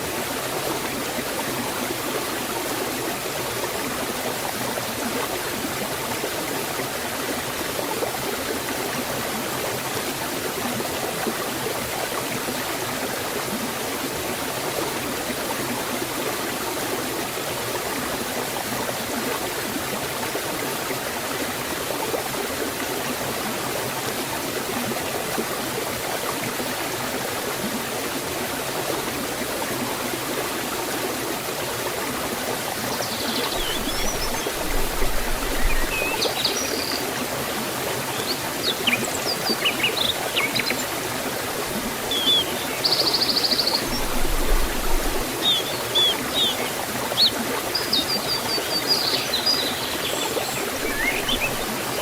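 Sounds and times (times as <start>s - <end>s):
water rushing and splashing: 0.0s - 52.0s.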